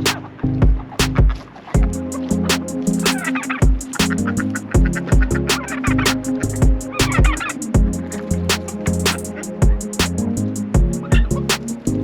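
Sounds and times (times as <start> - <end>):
bass line: 0.0 - 12.0
chords: 0.0 - 12.0
drum hits: 0.6 - 2.0, 3.6 - 4.2, 4.8 - 5.5, 6.1 - 8.0, 10.8 - 11.6.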